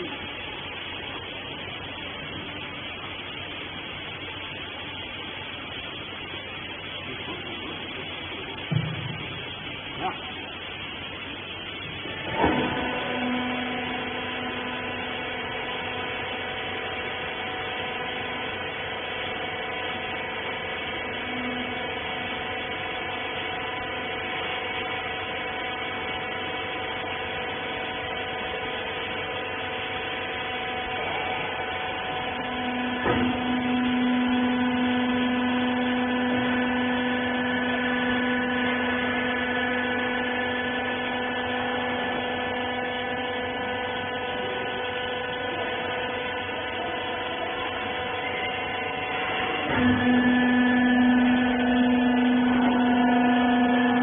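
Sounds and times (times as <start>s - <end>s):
baler machine humming: 0.0s - 54.0s
machine knock: 8.6s - 9.3s.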